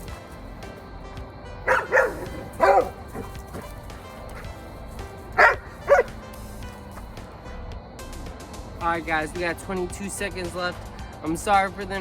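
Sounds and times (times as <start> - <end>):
dog barking: 1.7 - 3.7, 5.4 - 6.2.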